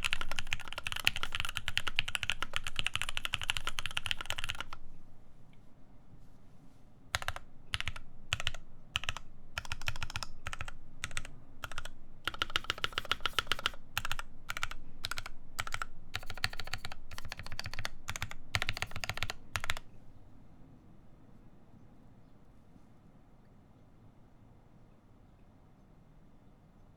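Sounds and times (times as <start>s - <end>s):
typing on mechanical keyboard: 0.0s - 4.8s, 7.1s - 19.9s.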